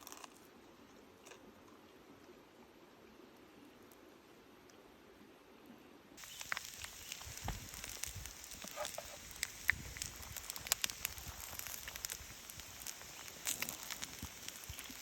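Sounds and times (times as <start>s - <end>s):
campfire crackling: 6.2s - 15.0s.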